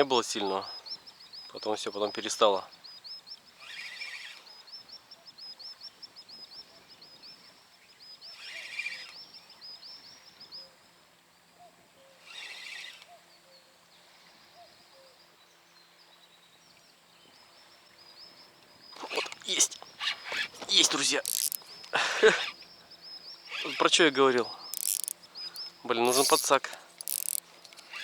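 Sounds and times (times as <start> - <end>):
faint outdoor ambience: 0.0 - 28.0
songbird chirping: 0.0 - 28.0
short noisy rasps: 19.4 - 22.6, 24.7 - 25.2, 26.0 - 28.0.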